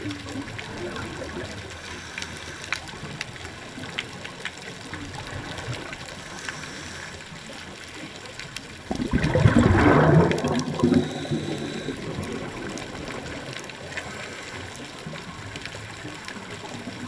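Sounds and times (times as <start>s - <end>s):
faint underwater clicks: 0.0s - 17.0s
underwater hiss: 1.4s - 3.2s, 6.1s - 7.6s, 9.1s - 15.2s
gush of regulator bubbles: 8.8s - 17.0s.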